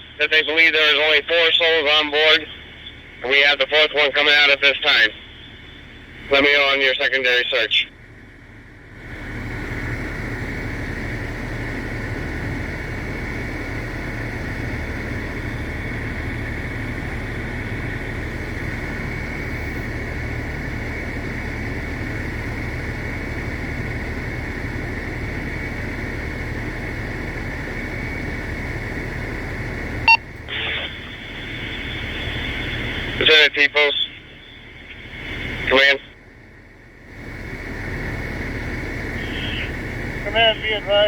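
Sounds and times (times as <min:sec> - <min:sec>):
radio static rumble and hiss: 0:00.0 - 0:08.0, 0:09.1 - 0:41.0
thin constant whine: 0:00.0 - 0:41.0
radio click: 0:30.4 - 0:34.2.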